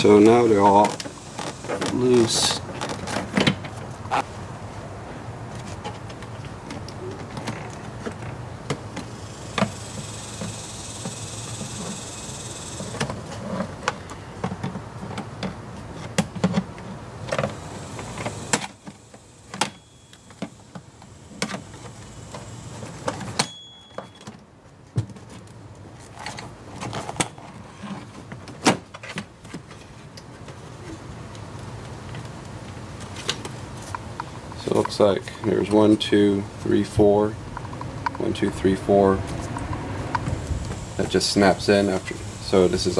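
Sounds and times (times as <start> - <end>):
high hiss: 40.2 - 42.9.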